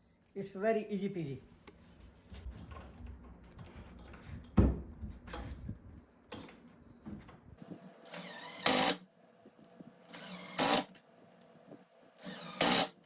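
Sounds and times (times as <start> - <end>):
power drill spinning up: 8.1 - 9.0, 10.1 - 10.9, 12.2 - 13.0.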